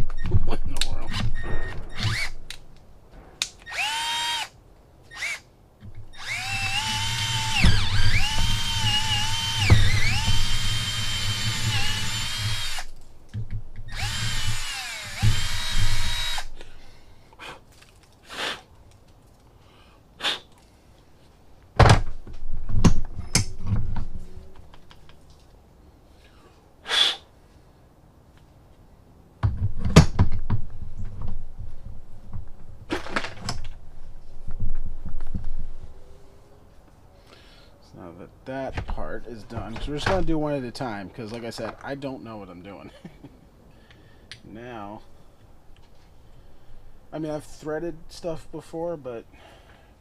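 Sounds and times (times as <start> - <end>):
cordless drill motor whining: 1.1 - 2.3, 3.6 - 4.5, 5.1 - 5.4, 6.1 - 12.9, 13.9 - 16.5.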